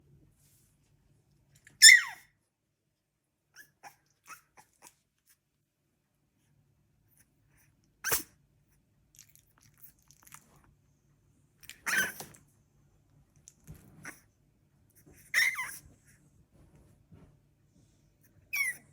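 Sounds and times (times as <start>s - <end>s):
puppy squeaking: 1.7s - 2.3s, 11.8s - 12.4s, 15.2s - 15.9s, 18.5s - 18.9s
puppy short calls: 11.8s - 12.3s.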